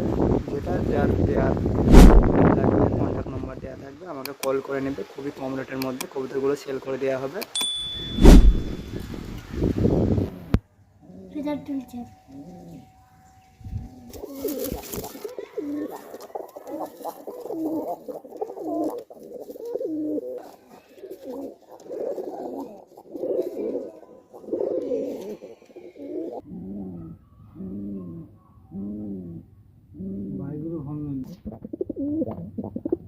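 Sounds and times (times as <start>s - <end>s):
loud rustling burst: 1.8s - 2.3s, 8.2s - 9.8s
pigeons cooing: 12.3s - 13.0s, 13.7s - 30.8s, 31.4s - 33.0s.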